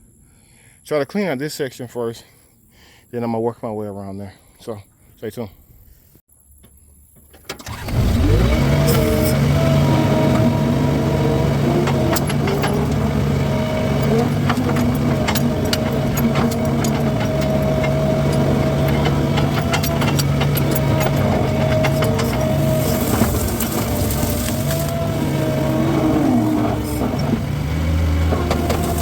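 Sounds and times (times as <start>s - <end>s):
skid steer engine running: 7.6s - 29.0s.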